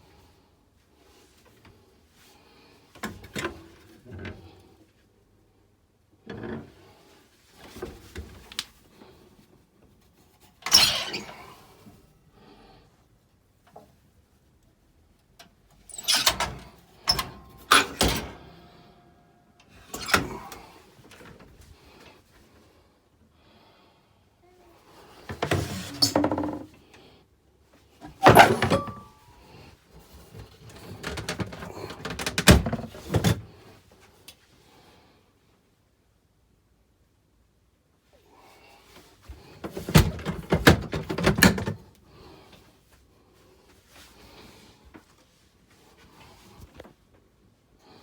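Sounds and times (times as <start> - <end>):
doors opening and shutting: 15.9 - 18.8, 19.7 - 21.5, 25.3 - 26.7, 28.0 - 29.1, 30.8 - 33.5, 39.7 - 41.8.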